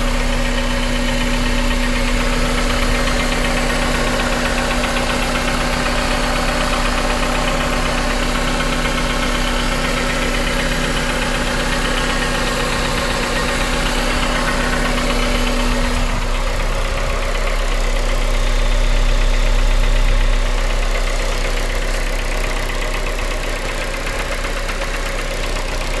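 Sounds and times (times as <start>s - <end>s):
car engine idling with knock: 0.0s - 26.0s
fuel injector ticking: 0.0s - 26.0s.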